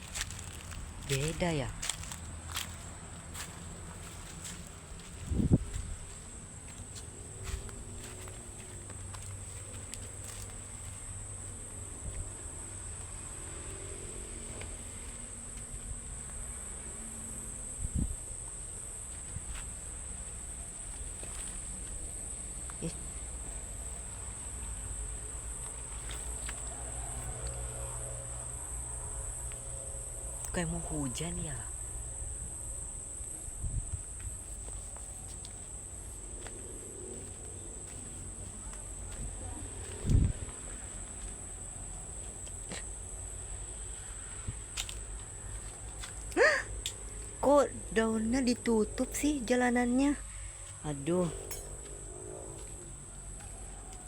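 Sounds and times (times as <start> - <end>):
insects buzzing in trees: 0.0 - 54.0.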